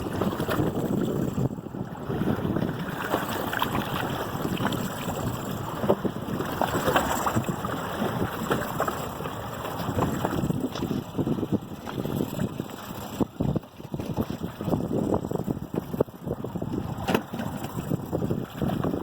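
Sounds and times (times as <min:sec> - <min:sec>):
water slapping against boat: 0:00.0 - 0:19.0
wind buffeting microphone: 0:00.0 - 0:19.0.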